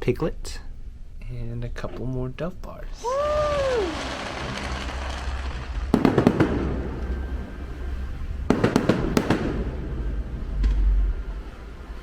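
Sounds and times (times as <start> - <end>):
steady low rumble: 0.0 - 12.0
fireworks crackling bangs: 3.0 - 11.8.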